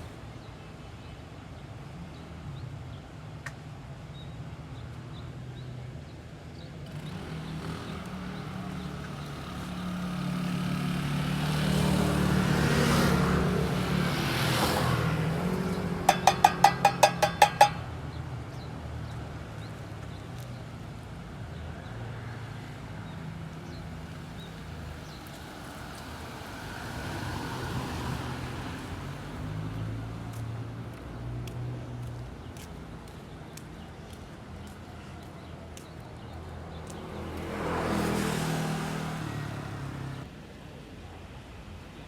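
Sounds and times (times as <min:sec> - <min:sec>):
vehicle engine passing: 0:06.9 - 0:18.0, 0:37.0 - 0:40.2.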